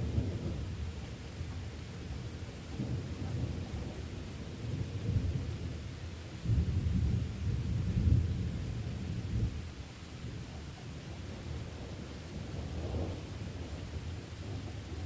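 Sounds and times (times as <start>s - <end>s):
rolling thunder: 0.0s - 1.0s, 6.4s - 9.6s, 11.3s - 15.0s
rain hissing: 6.5s - 15.0s.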